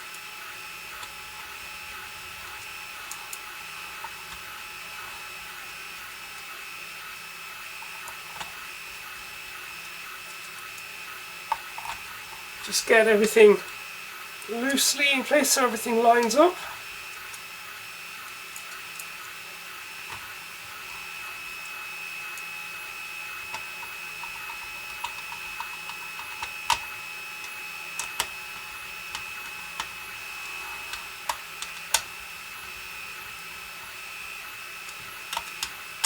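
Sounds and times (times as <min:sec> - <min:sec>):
steady high-pitched whine: 0:00.0 - 0:36.0
screws clicking in plastic case: 0:23.4 - 0:32.1, 0:34.8 - 0:36.0.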